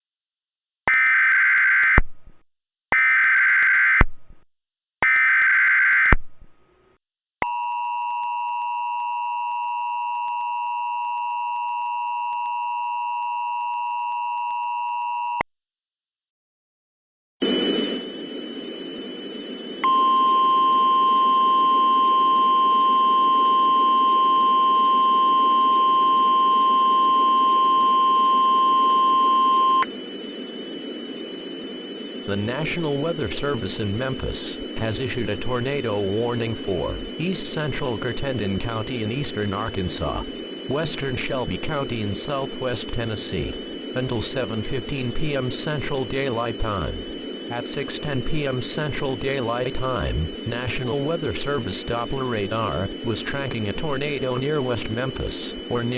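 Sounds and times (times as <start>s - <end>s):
data burst tones: 17.4s - 55.9s
loud steady alarm tone: 17.4s - 55.9s
two-tone attention signal: 19.8s - 29.9s.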